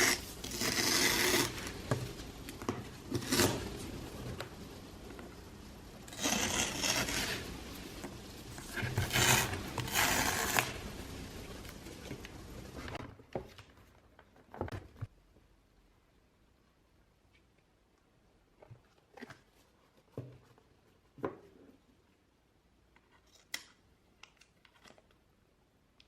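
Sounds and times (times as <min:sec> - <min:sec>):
packaging rubbing or tearing: 0:00.0 - 0:01.8, 0:03.0 - 0:04.0, 0:06.1 - 0:07.8, 0:08.5 - 0:10.8.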